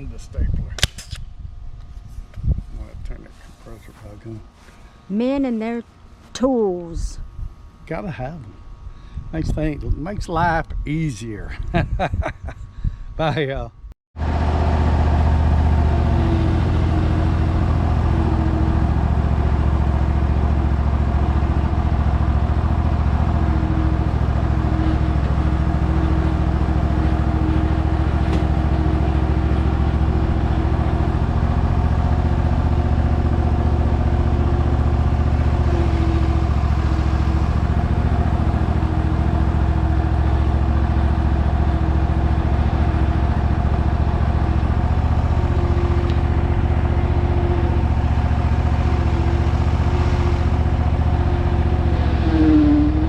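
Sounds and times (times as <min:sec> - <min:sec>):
air compressor running: 0:14.2 - 0:53.0.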